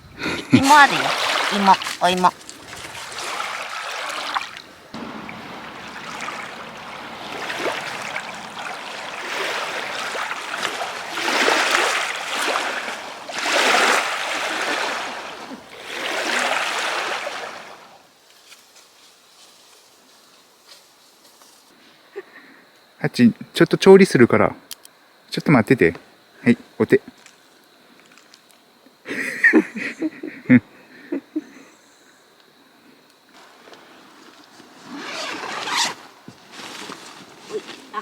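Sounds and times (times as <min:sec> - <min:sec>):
running water splashing: 0:00.4 - 0:18.0.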